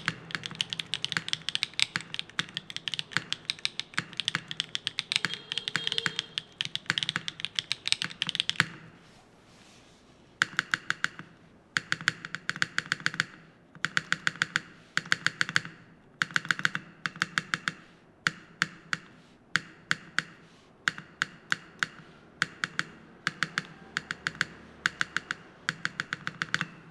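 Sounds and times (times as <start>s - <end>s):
mechanical keyboard typing: 0.0s - 9.0s, 10.4s - 26.9s.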